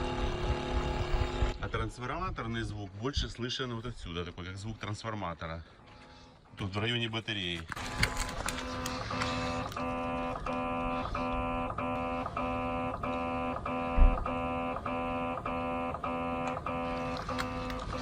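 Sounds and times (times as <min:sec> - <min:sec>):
pulsing transformer-like hum: 0:00.0 - 0:03.3, 0:07.8 - 0:18.0.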